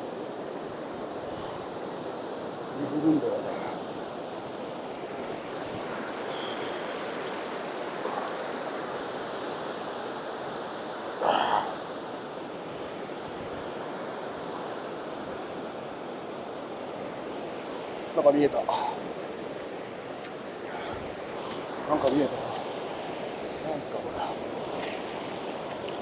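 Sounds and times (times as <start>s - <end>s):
ocean surf breaking: 0.0s - 16.0s.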